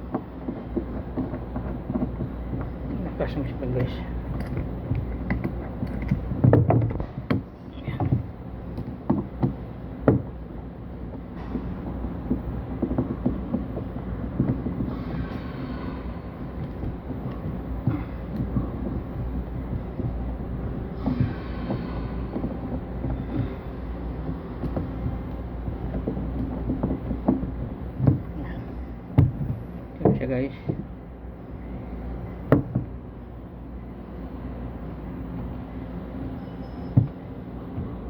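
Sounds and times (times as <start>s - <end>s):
low rumble: 0.0s - 30.0s.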